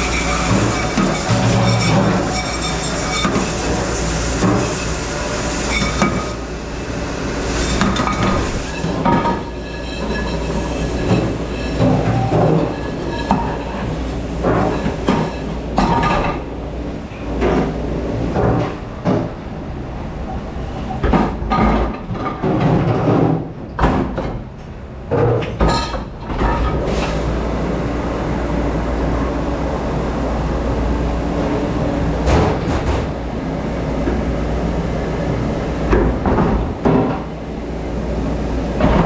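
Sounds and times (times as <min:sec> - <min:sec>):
dishes clattering and knocking: 0:07.7 - 0:16.4, 0:25.1 - 0:26.8.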